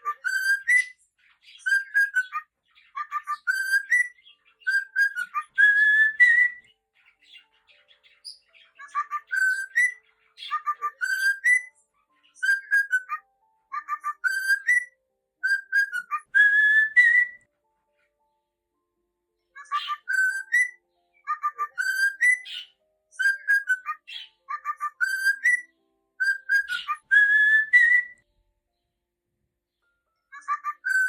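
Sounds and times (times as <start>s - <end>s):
cockatiel whistling: 0.0s - 1.0s, 1.6s - 6.7s, 8.3s - 11.7s, 12.4s - 17.4s, 19.6s - 28.2s, 30.4s - 31.0s
soft bird chirps: 0.0s - 18.6s, 19.4s - 31.0s.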